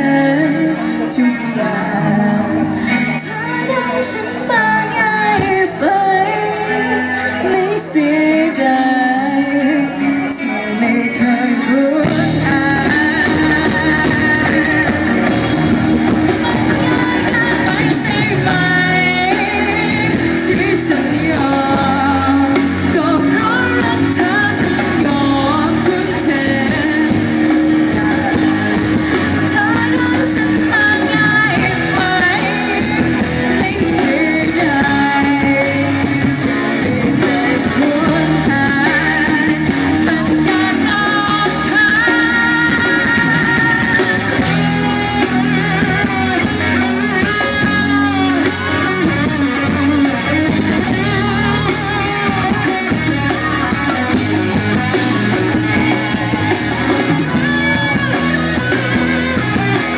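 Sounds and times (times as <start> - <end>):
bass: 0.0 - 59.9
drums: 0.0 - 59.9
electric guitar: 0.0 - 59.9.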